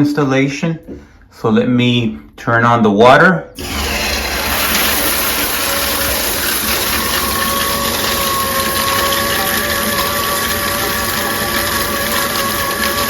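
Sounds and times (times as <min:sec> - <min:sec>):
shower water spraying: 0:03.6 - 0:13.0.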